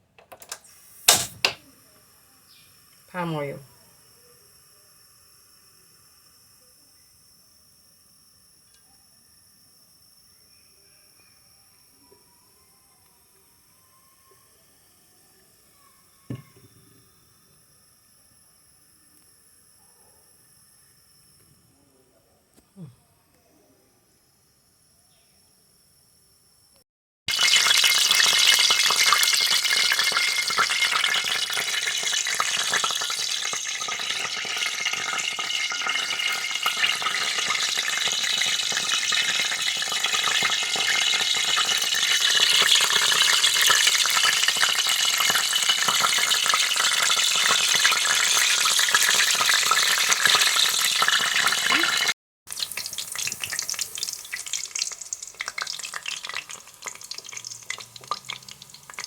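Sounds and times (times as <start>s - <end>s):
fritters sizzling in hot oil: 27.3s - 59.0s.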